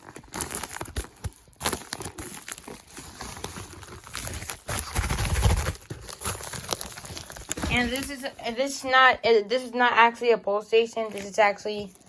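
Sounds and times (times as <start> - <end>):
packaging crinkling and rustling: 0.0 - 8.8, 11.0 - 12.0.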